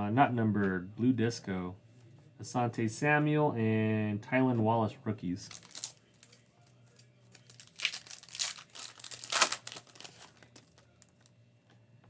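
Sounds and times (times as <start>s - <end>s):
foil wrapper tearing and crinkling: 5.5s - 6.4s, 7.3s - 11.3s.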